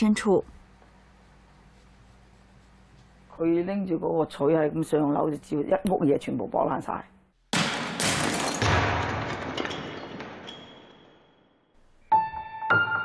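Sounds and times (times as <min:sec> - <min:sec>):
smashing crash with thud: 0:07.5 - 0:11.2
piano music: 0:12.1 - 0:13.0.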